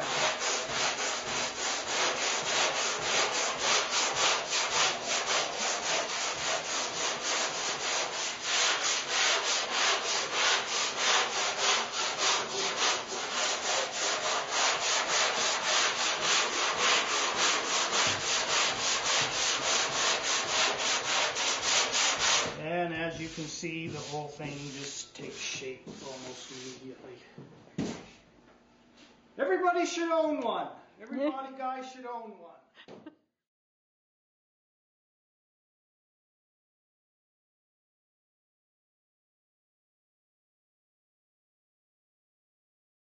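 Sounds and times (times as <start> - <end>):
sandpaper rasping back and forth: 0.0 - 26.9.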